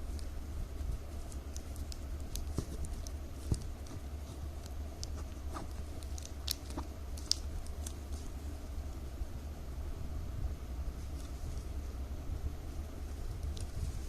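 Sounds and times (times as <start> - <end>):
plastic strips crinkling: 0.0 - 8.6, 13.1 - 14.0
steady low hum: 0.0 - 14.0.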